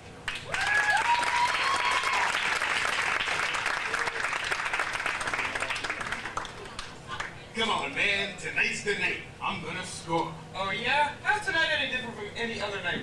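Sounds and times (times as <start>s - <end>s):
audience applauding: 0.2s - 7.4s
crowd cheering: 0.3s - 7.4s.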